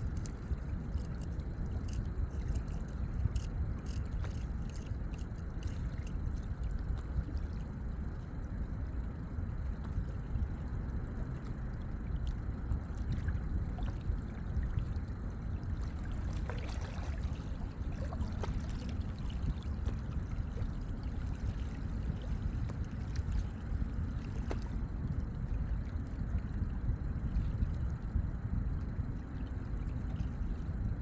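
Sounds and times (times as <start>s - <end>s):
lake water lapping: 15.8s - 24.8s.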